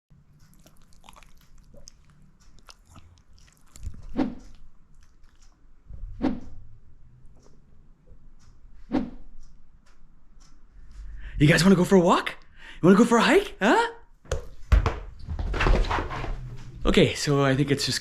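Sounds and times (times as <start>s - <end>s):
chewing something crunchy: 0.3s - 5.6s.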